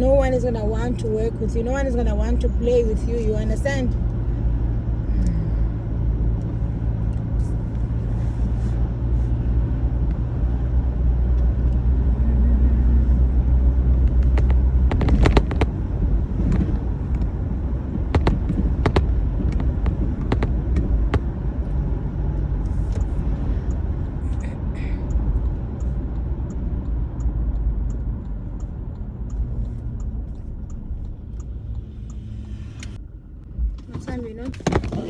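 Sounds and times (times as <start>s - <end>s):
car road rumble from inside: 0.0s - 35.0s
sharp clicks and knocks: 14.0s - 21.8s, 25.1s - 35.0s.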